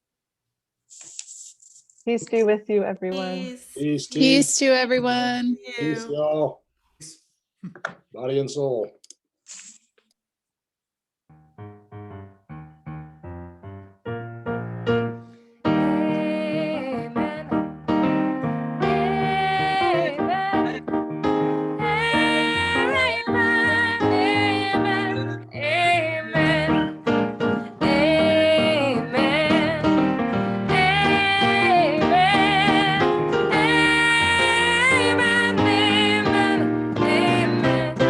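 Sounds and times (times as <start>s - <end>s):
voices singing with vibrato: 5.6s - 6.3s, 18.8s - 20.8s, 21.8s - 26.9s
piano accompaniment: 11.3s - 38.0s.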